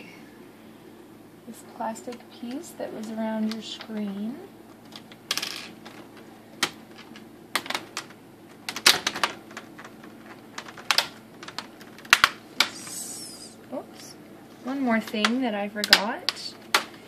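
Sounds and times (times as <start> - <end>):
plastic clips snapping: 4.8 - 12.9, 15.2 - 17.0.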